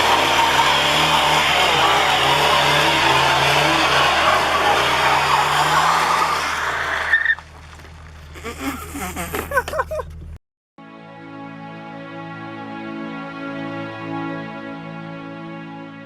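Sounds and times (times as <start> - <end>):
tyres spinning in mud: 0.0 - 10.1
car engine running: 0.0 - 10.4.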